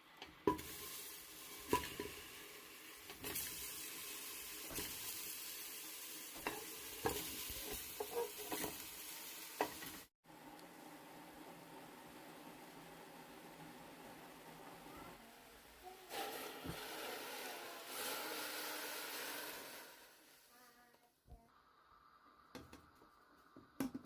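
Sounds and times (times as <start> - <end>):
food sizzling in hot oil: 0.4 - 10.1, 16.1 - 20.5.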